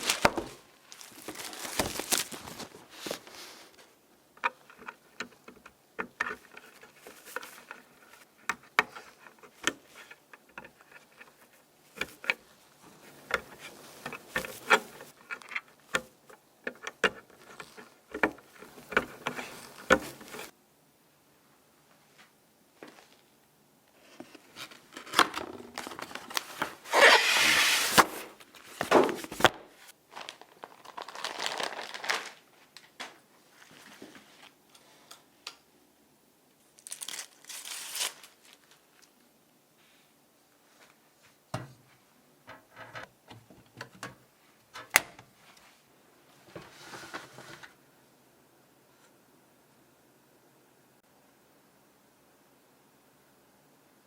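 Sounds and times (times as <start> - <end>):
plastic crinkling and tearing: 0.0 - 3.7, 25.0 - 32.9, 36.7 - 39.1.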